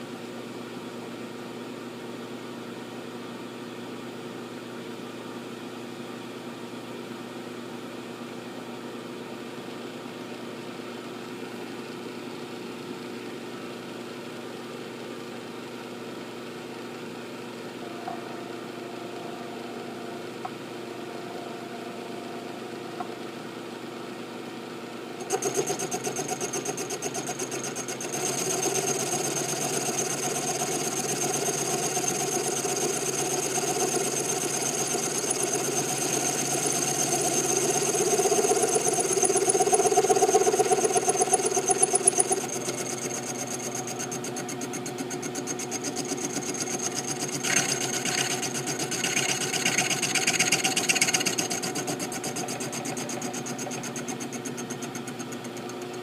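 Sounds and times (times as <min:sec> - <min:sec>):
milling machine humming and whining: 0:17.6 - 0:56.0.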